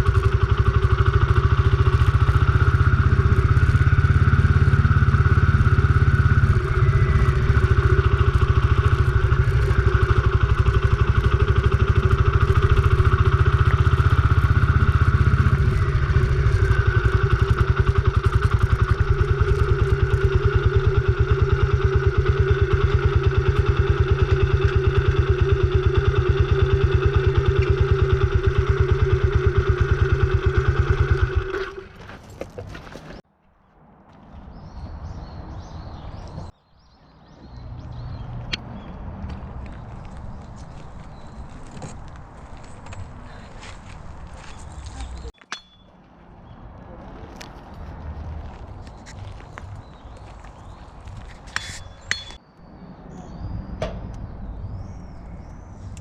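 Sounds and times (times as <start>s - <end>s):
motorcycle engine running: 0.0s - 33.2s, 48.4s - 52.4s.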